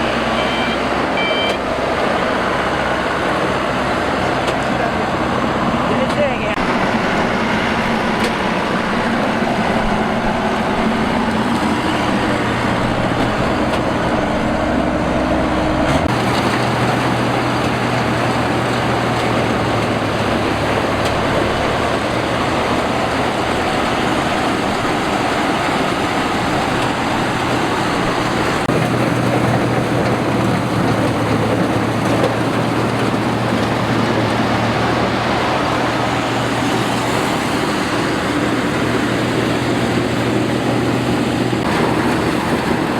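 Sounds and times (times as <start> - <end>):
combine harvester engine hum: 0.0 - 42.9
harvester machinery noise: 0.0 - 42.9.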